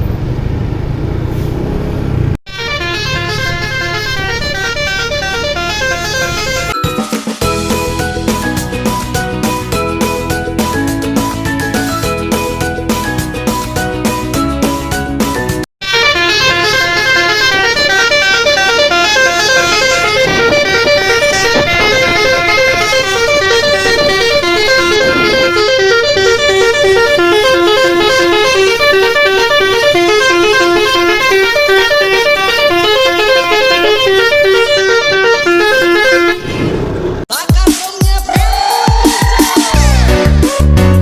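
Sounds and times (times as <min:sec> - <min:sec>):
multi-tone musical air horn: 0:02.5 - 0:06.8, 0:15.8 - 0:36.5
low rumble: 0:20.0 - 0:26.5.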